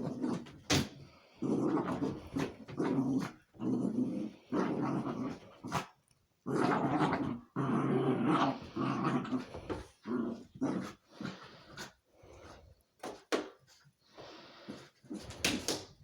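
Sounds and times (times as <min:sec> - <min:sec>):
dog growling: 0:01.3 - 0:11.8.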